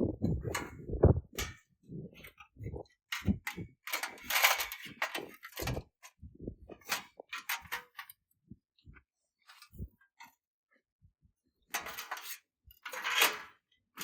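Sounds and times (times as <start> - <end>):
gear knocking and thumping: 0.0 - 6.9.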